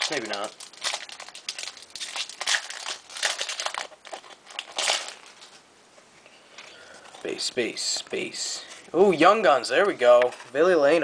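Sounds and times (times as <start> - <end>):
foil wrapper crinkling and tearing: 0.0 - 5.5.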